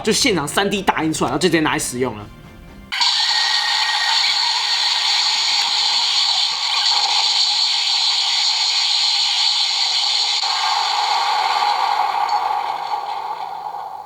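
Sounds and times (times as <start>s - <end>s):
toy speaker rushing hiss: 3.0s - 11.8s.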